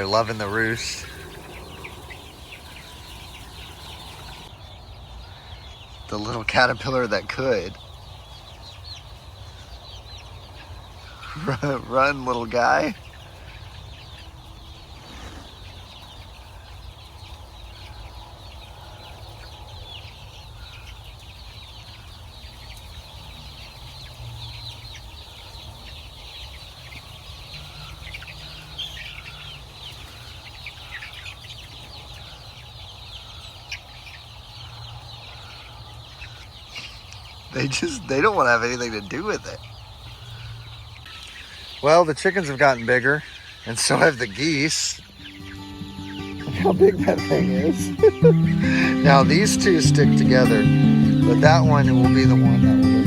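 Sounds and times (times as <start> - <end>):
chickens clucking: 0.0 - 53.0.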